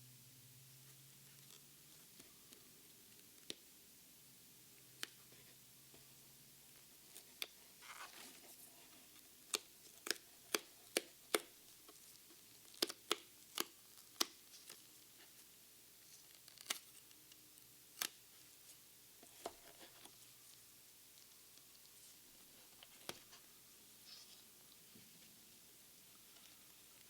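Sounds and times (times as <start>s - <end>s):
soft packaging rustle: 6.7s - 27.0s.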